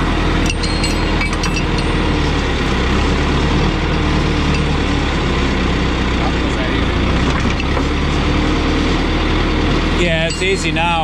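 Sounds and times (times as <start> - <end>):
diesel engine idling: 0.0 - 11.0
light metallic clinks: 0.4 - 4.9, 10.2 - 11.0.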